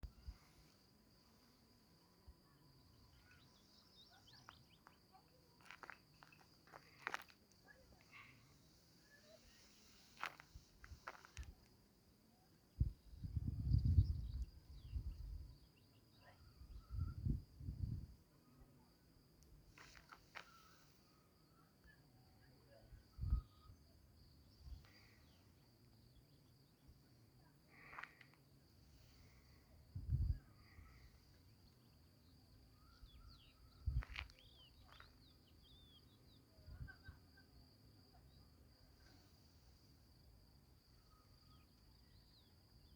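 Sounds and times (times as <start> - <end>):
faint high insect drone: 0.0 - 42.9
small birds chirping: 3.0 - 10.4.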